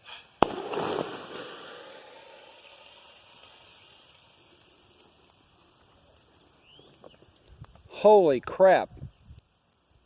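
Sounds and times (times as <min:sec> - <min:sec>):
steam explosion bang: 0:00.1 - 0:03.8.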